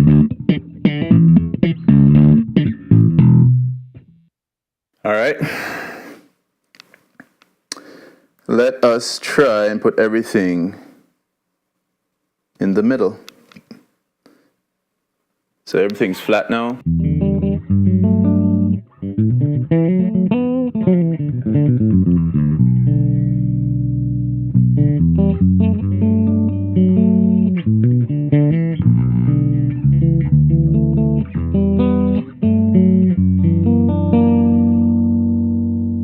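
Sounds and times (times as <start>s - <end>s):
electric bass plucked notes: 0.0s - 4.3s, 16.8s - 36.0s.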